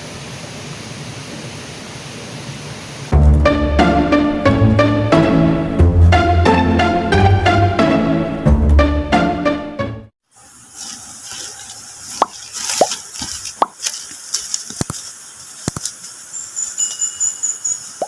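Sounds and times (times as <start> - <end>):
background music: 3.1 - 10.1.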